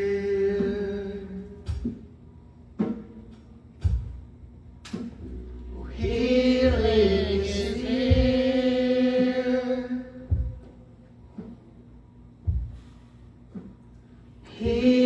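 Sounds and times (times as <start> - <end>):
low thumps: 3.8 - 9.4, 10.2 - 11.6, 12.4 - 13.8
person singing long notes: 5.4 - 10.3.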